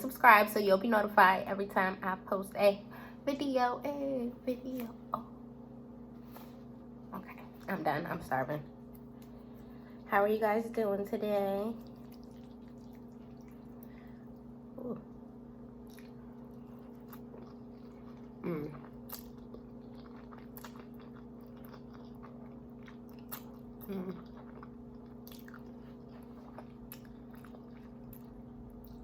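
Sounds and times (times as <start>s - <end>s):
steady low hum: 0.0s - 29.0s
wet mouth sounds: 11.8s - 14.4s, 15.9s - 29.0s
chewing and biting pasta: 11.8s - 14.5s, 15.8s - 29.0s
short hummed vocal sounds: 13.0s - 19.3s, 23.4s - 24.5s.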